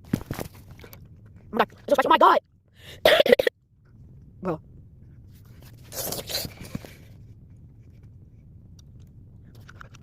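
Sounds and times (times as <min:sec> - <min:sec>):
harsh mouth and breath sounds: 0:05.0 - 0:10.0.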